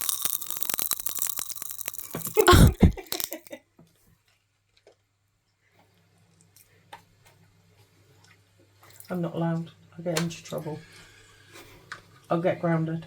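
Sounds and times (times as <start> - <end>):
popping candy crackling: 0.0 - 3.5
person coughing: 2.2 - 3.4.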